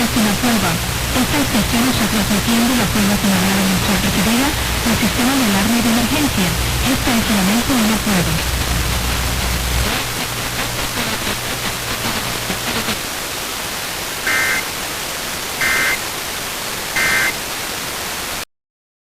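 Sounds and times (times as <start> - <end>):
radio static hiss: 0.0 - 18.4
bursts of data tones: 14.3 - 14.7, 15.6 - 16.0, 17.0 - 17.4.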